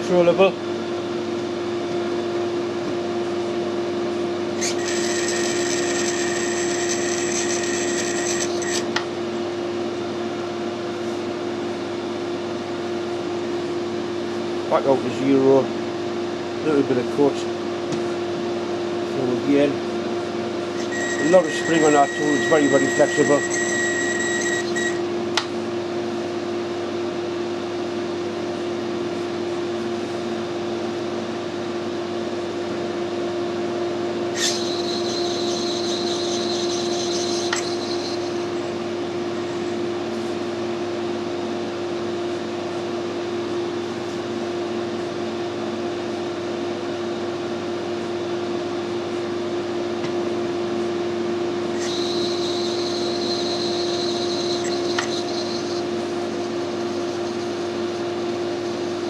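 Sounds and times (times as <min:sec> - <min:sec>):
lathe humming: 0:04.4 - 0:09.4, 0:20.3 - 0:25.5, 0:34.1 - 0:39.8, 0:51.2 - 0:59.0
high-pitched tool ringing: 0:04.6 - 0:08.9, 0:20.8 - 0:25.0, 0:34.4 - 0:38.7, 0:51.8 - 0:57.6.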